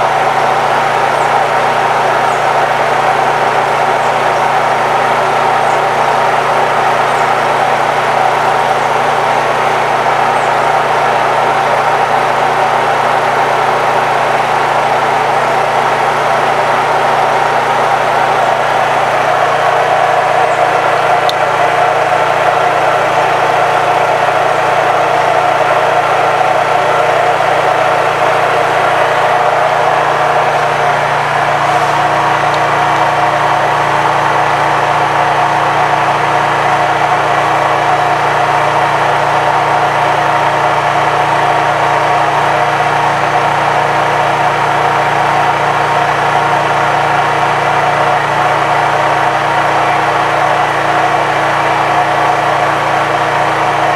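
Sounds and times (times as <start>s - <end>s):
generator engine running: 0.0s - 53.9s.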